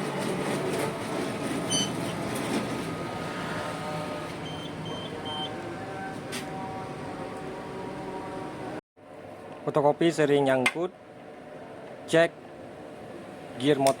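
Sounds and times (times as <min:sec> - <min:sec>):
photocopier whirring: 0:00.0 - 0:06.7
short beeps: 0:04.4 - 0:05.5.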